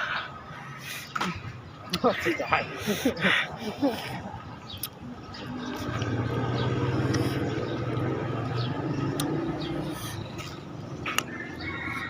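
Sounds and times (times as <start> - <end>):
vehicle engine passing by: 5.0 - 12.0.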